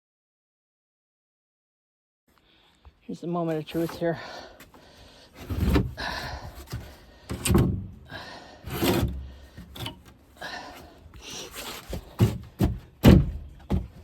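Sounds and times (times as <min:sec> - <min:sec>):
wood scraping against wood: 0:05.3 - 0:07.9, 0:08.6 - 0:10.2, 0:10.8 - 0:14.0
sharp wooden knocks: 0:12.2 - 0:14.0.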